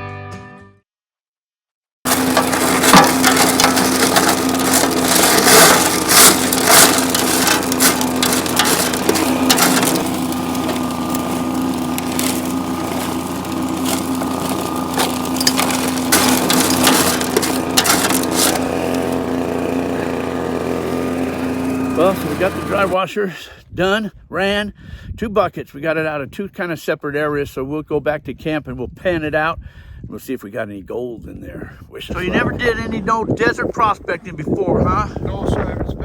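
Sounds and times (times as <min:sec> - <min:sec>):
small gas engine running: 0:02.1 - 0:23.0.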